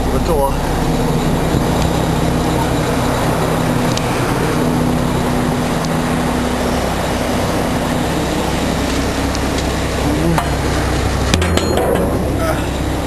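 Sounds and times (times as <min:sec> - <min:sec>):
diesel truck engine droning: 0:00.0 - 0:13.0
sharp knocks: 0:11.3 - 0:12.4.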